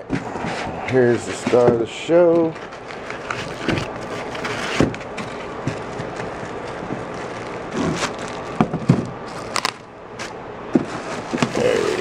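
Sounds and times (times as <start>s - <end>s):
plastic and cardboard rustling: 0.0s - 12.0s.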